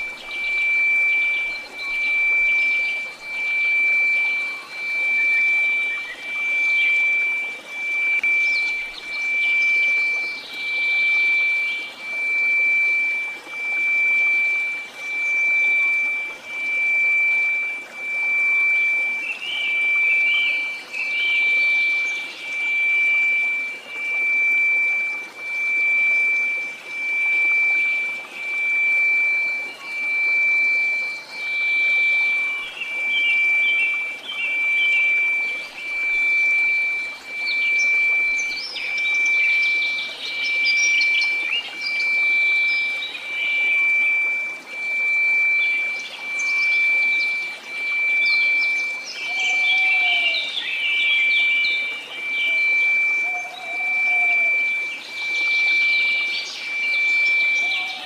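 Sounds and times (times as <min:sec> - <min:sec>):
pulsing pure tone: 0:00.0 - 0:58.0.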